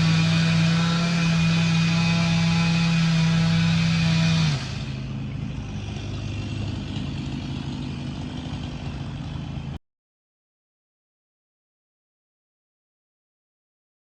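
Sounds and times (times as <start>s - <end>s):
engine-like hum: 0.0s - 9.8s.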